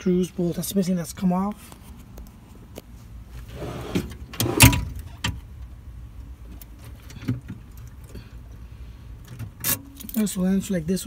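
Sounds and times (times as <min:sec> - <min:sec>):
metal drawer knocks and rattle: 0:03.6 - 0:05.4.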